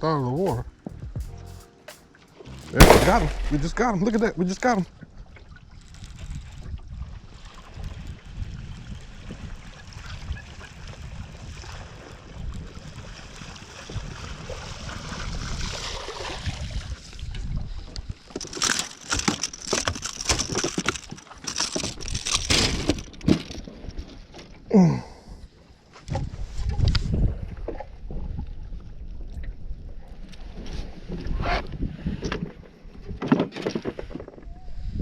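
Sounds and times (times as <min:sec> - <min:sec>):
wind rumble on microphone: 0:05.0 - 0:18.4, 0:25.3 - 0:35.0
water lapping around boat: 0:05.2 - 0:24.7.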